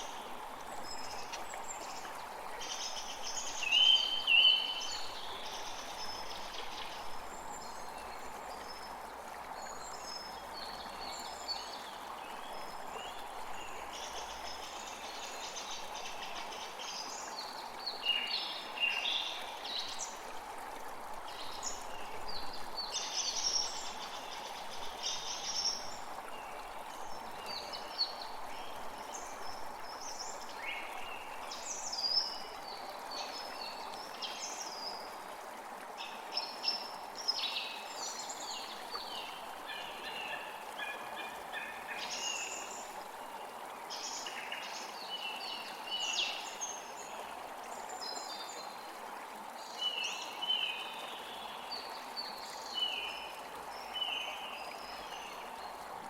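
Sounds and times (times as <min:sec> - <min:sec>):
forest birds chirping: 0:00.0 - 0:09.0, 0:36.0 - 0:47.2
creek flowing: 0:00.0 - 0:56.0.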